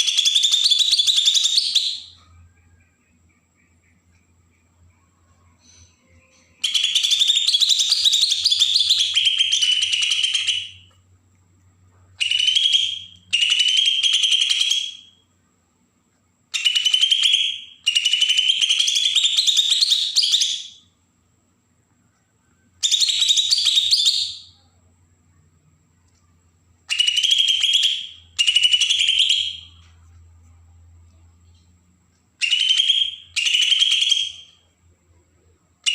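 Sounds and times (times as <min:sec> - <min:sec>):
bird singing rasping song: 0:00.0 - 0:10.9, 0:12.2 - 0:15.2, 0:16.5 - 0:20.9, 0:22.8 - 0:24.6, 0:26.9 - 0:29.9, 0:32.4 - 0:34.7.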